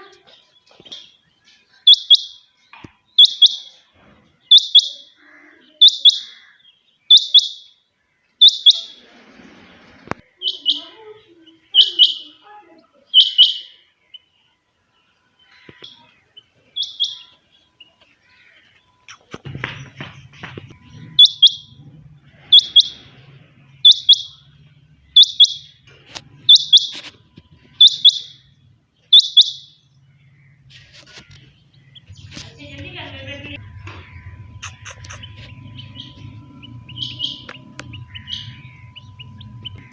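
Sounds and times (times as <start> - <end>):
quail calling: 11.8 - 12.4, 13.1 - 13.8, 21.1 - 21.8, 22.4 - 23.1, 23.8 - 24.4, 26.4 - 27.1, 27.7 - 28.4, 30.4 - 39.9.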